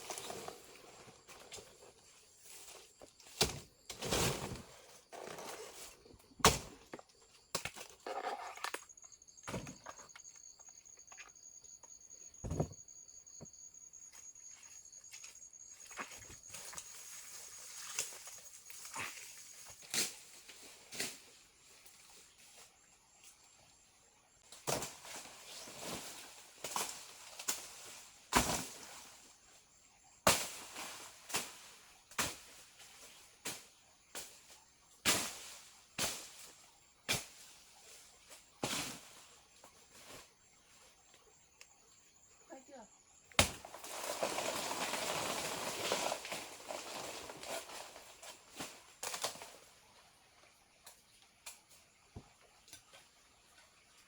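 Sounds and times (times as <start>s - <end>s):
high insect trill: 0.0s - 23.9s.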